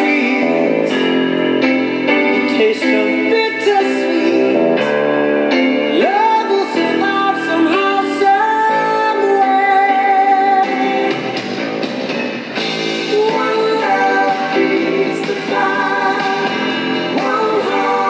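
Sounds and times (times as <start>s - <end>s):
guitar backing: 0.0s - 18.0s
woman singing: 6.0s - 11.2s, 13.1s - 18.0s.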